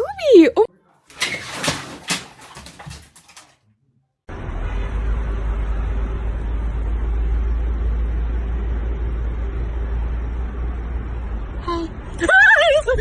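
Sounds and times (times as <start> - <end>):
quick knocks and rattles: 1.1 - 3.6.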